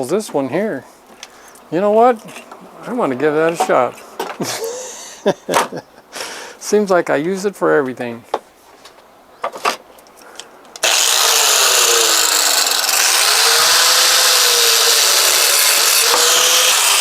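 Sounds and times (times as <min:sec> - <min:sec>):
angle grinder cutting rubber: 0:10.8 - 0:17.0.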